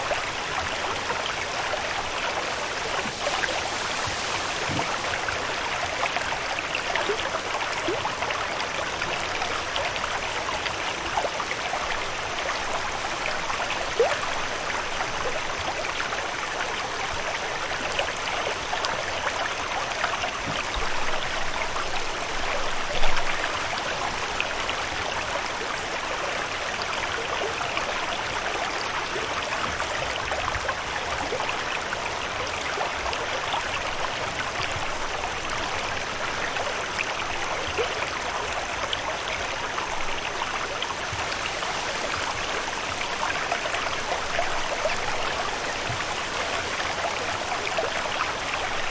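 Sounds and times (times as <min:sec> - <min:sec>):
running water trickling: 0:00.0 - 0:48.9
water splash: 0:01.4 - 0:07.1.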